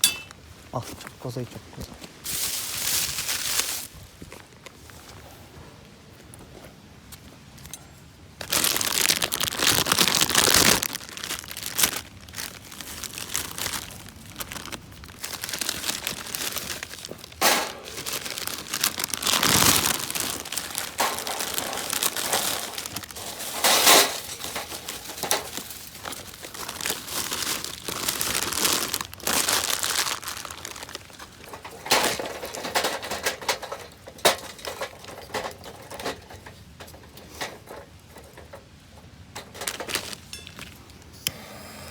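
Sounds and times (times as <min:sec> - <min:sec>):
crinkly material crumpled by hand: 0:00.8 - 0:07.3, 0:08.4 - 0:41.0.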